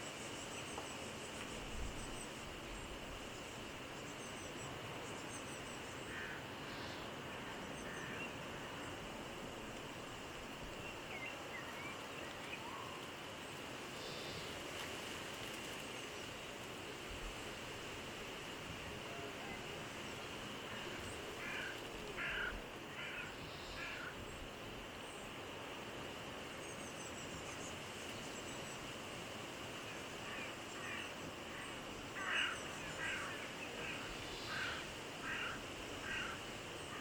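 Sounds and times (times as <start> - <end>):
steady outdoor hiss: 0.0 - 37.0.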